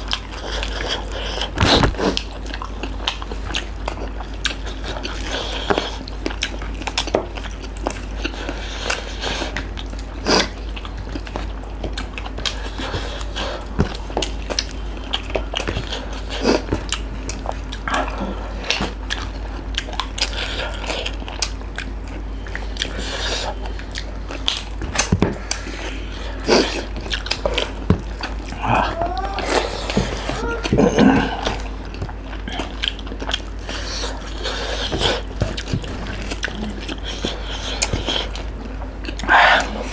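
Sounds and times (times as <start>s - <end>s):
chewing and mouth smacks: 0.0s - 30.0s, 31.3s - 39.9s
low hum: 17.1s - 39.9s.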